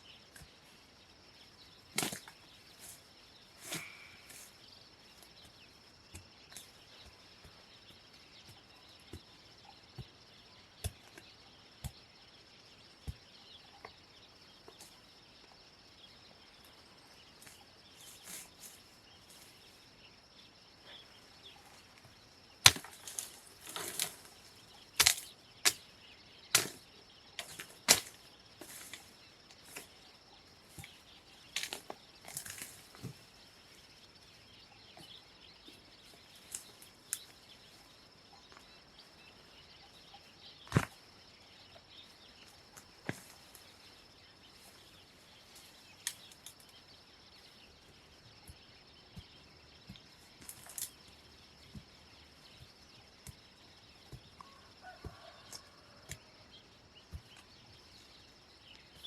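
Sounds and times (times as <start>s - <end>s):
chopping wood: 2.0s - 2.3s, 22.6s - 24.2s, 25.0s - 25.8s, 26.5s - 26.8s, 27.4s - 29.0s, 40.7s - 40.9s.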